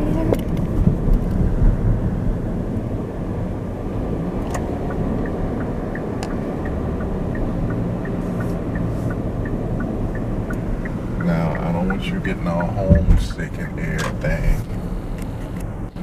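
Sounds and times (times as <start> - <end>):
engine and road noise: 0.0 - 16.0
light regular ticking: 4.4 - 14.3.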